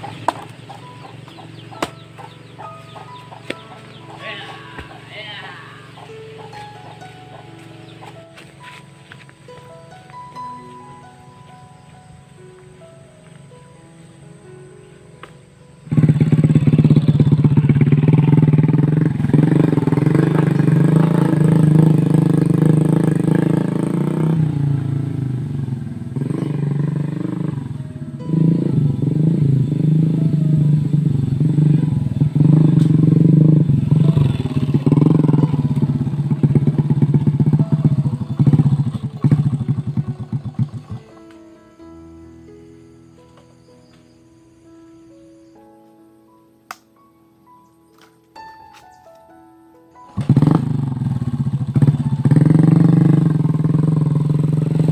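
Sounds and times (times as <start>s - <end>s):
small motorcycle engine revving: 15.8s - 41.3s, 50.1s - 54.9s.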